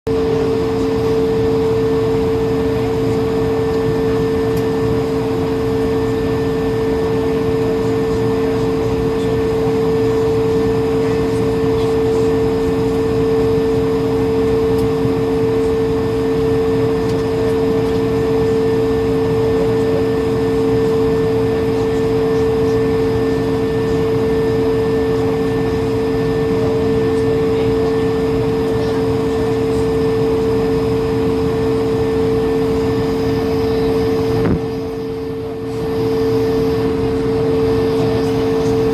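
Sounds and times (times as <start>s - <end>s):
aircraft cabin air rush: 22.7s - 38.9s.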